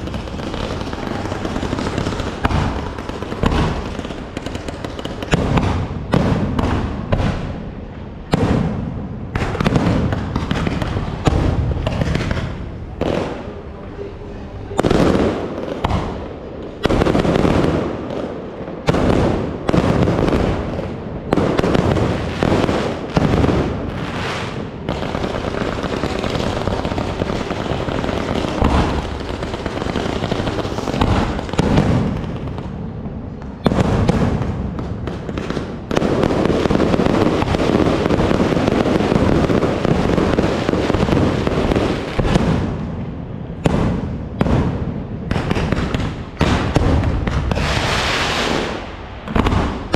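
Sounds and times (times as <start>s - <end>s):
fireworks crackling: 0.0s - 13.9s, 14.7s - 49.9s
fireworks banging: 0.0s - 49.9s.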